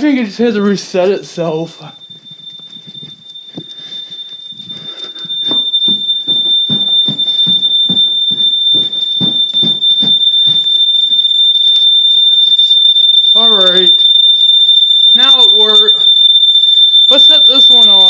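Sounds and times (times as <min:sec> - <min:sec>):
smoke alarm tone: 0:00.0 - 0:18.0
footsteps: 0:01.7 - 0:14.1.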